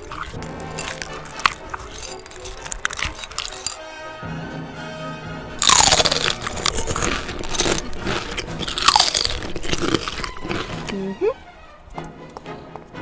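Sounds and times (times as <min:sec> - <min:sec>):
loud dense crunching: 0:00.0 - 0:03.8, 0:05.6 - 0:11.0
background music: 0:00.0 - 0:13.0.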